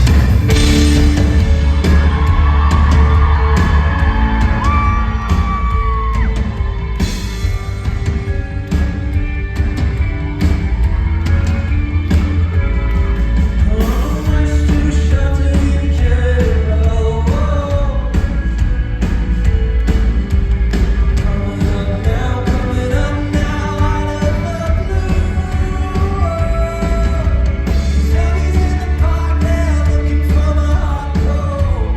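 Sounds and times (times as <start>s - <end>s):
drum hits: 0.0s - 24.6s
heavy bass: 0.0s - 31.9s
rock-pop band playing: 0.0s - 31.9s
man singing: 13.5s - 18.8s, 21.2s - 31.9s.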